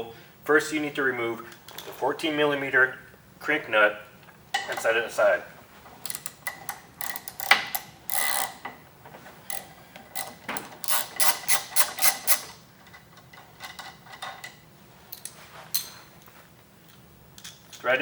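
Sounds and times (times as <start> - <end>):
wrench metal clicks: 6.0 - 8.6, 9.5 - 12.6
wrench scraping strokes: 6.0 - 8.6, 9.4 - 12.6.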